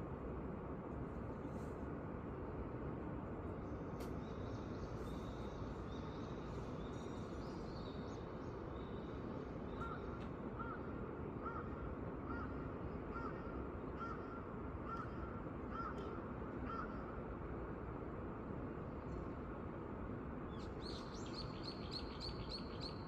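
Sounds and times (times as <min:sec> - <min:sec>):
low hum of city noise: 0:00.0 - 0:23.0
crow cawing: 0:11.4 - 0:17.1.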